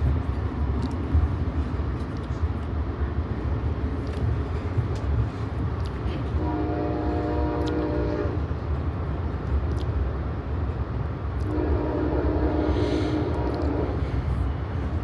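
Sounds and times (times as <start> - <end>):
passenger train rumbling: 0.0 - 15.0
locomotive horn chord: 6.4 - 8.4, 11.5 - 14.0.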